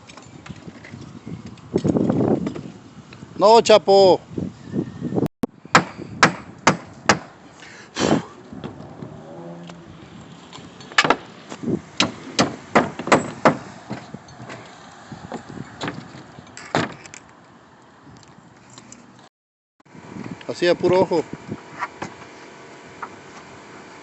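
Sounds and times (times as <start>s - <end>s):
hammer striking wood: 5.7s - 7.4s, 11.0s - 11.3s, 12.0s - 14.6s.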